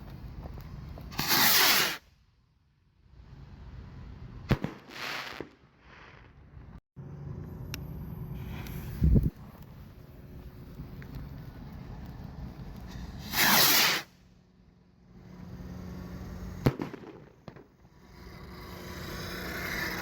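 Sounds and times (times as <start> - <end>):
firework rocket launching hiss: 1.1 - 2.1, 4.5 - 6.4, 8.3 - 9.5, 12.8 - 14.3
firework bursting bang: 16.5 - 17.7.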